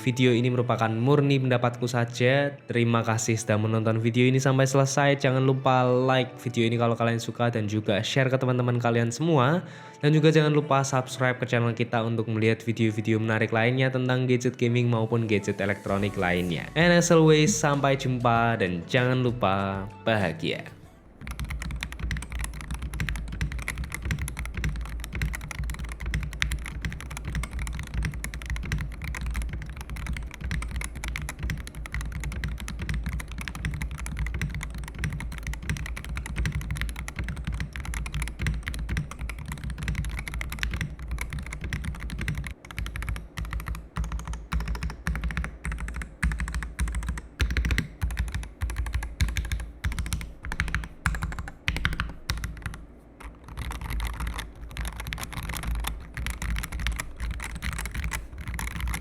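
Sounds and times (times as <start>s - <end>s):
mechanical keyboard typing: 21.2s - 59.0s.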